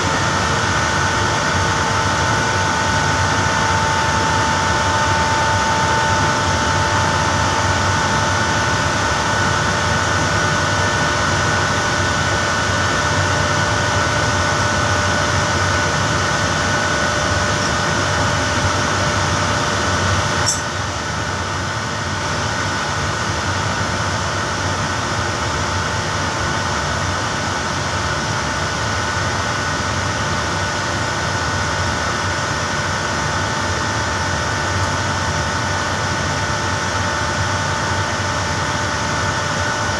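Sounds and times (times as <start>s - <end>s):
compressor hum with whining tones: 0.0s - 39.9s
sharp click: 20.4s - 20.7s.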